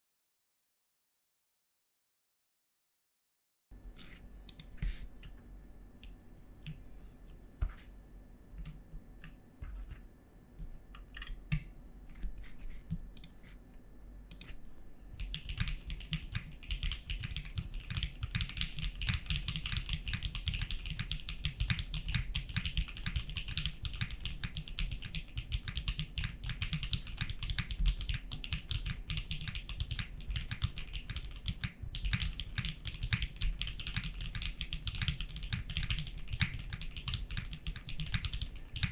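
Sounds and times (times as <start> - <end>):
mechanical keyboard typing: 15.2 - 38.9.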